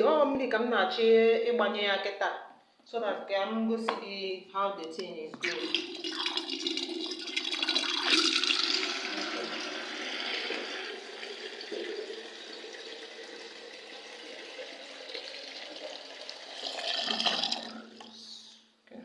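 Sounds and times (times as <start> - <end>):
water pouring into kettle: 5.4 - 18.2.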